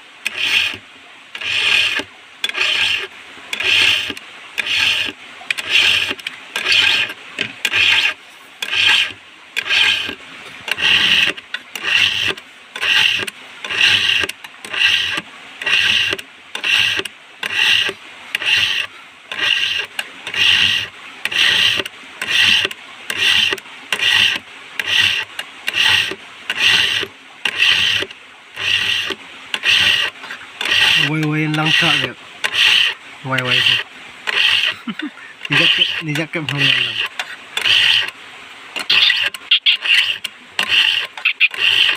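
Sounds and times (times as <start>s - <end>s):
file rasping on chainsaw chain: 0.2s - 38.2s, 38.8s - 41.9s.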